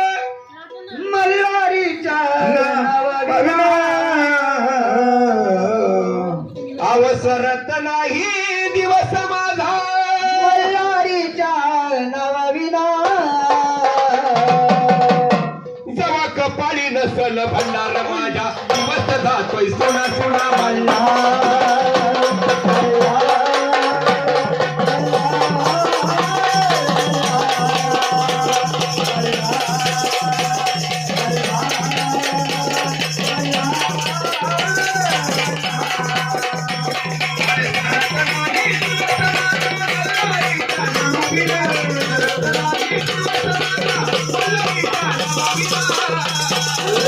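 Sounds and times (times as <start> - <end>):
drums beating: 0.0 - 11.4, 12.9 - 47.0
jingling rattling percussion: 17.1 - 47.0.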